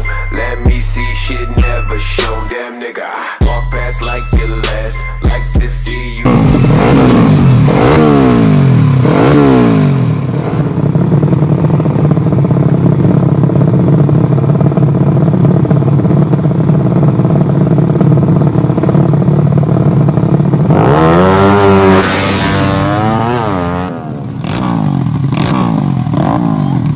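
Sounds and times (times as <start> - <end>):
motorcycle engine revving: 6.2 - 26.9.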